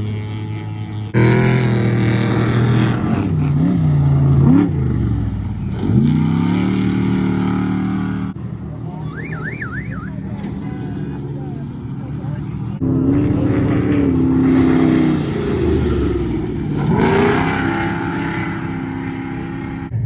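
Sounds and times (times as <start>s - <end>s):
race truck engine revving: 0.0s - 20.0s.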